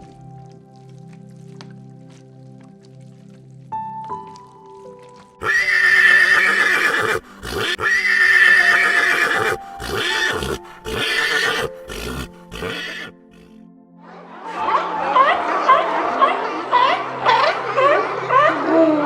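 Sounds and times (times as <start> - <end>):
soft background music: 0.0 - 19.0
horse neighing: 5.4 - 13.6.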